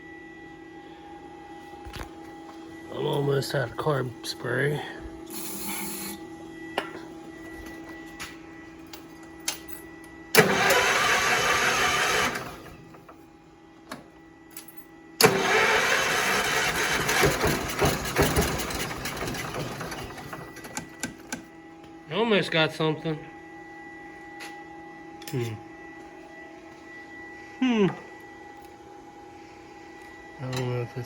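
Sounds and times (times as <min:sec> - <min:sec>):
engine cranked by starter: 0:10.3 - 0:12.7, 0:15.2 - 0:20.6.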